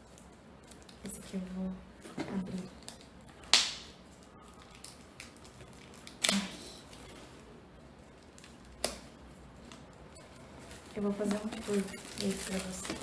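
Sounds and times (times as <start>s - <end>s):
wrapping being torn: 4.2s - 7.4s, 8.1s - 13.0s.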